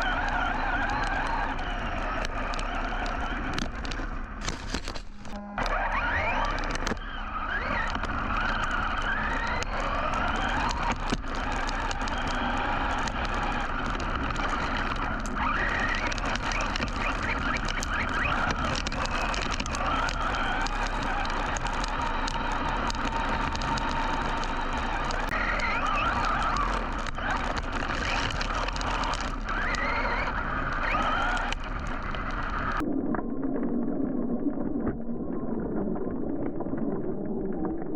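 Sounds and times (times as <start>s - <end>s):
drivetrain and tyre noise: 0.0s - 32.8s.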